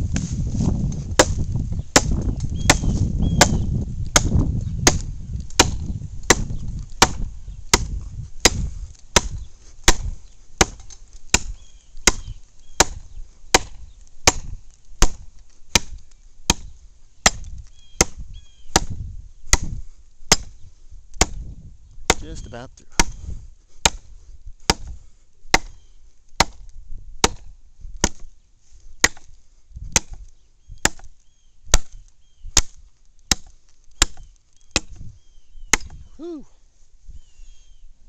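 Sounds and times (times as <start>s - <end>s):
tomahawk chopping into log: 0.2s - 20.6s, 21.2s - 21.5s, 22.1s - 22.4s, 23.0s - 23.2s, 23.8s - 25.8s, 26.4s - 28.3s, 29.0s - 29.3s, 29.9s - 31.1s, 31.7s - 35.1s, 35.7s - 36.0s.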